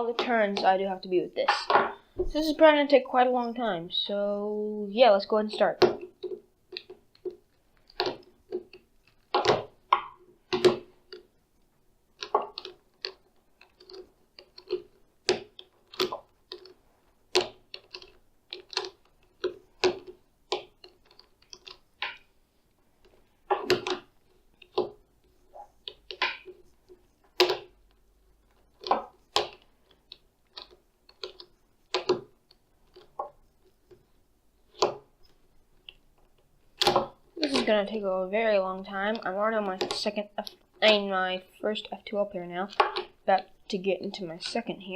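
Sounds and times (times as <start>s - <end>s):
plastic puzzle cube clacking: 5.5s - 11.4s, 12.1s - 22.3s, 23.0s - 44.9s.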